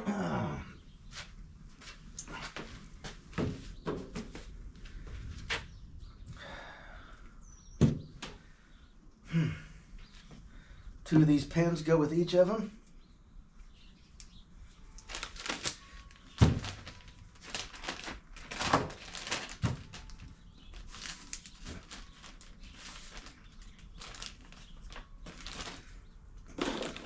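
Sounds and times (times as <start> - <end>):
rustling: 14.9 - 26.0.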